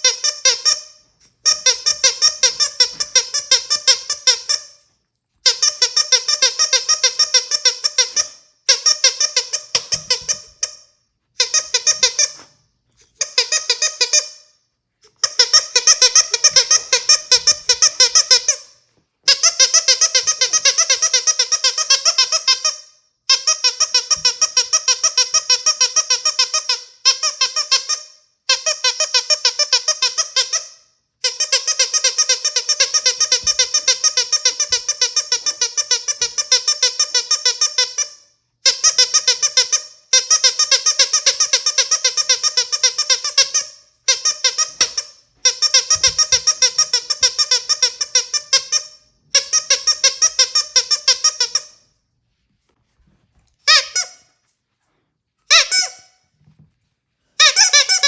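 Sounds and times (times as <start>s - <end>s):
squeaky dog toy squeaking: 0.0s - 52.0s, 53.6s - 54.5s, 55.4s - 56.6s, 57.4s - 58.0s.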